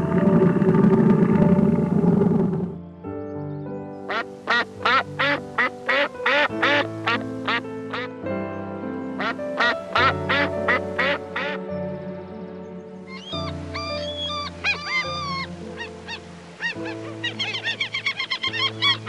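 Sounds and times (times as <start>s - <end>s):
background music with held notes: 0.0s - 19.0s
duck quacking: 4.1s - 8.1s, 9.2s - 11.6s.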